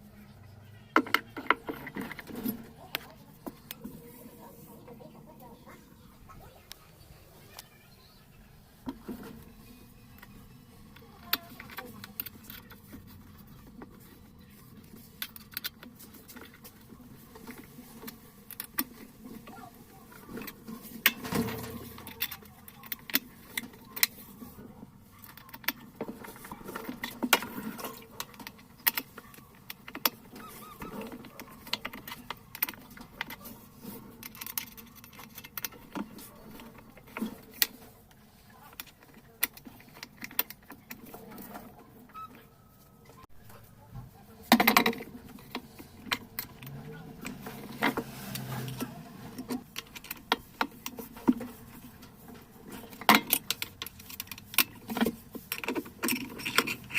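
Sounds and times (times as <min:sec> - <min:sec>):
tools and parts clicking and clinking: 0:00.8 - 0:04.0, 0:08.8 - 0:56.9
metal parts clattering: 0:52.7 - 0:56.9.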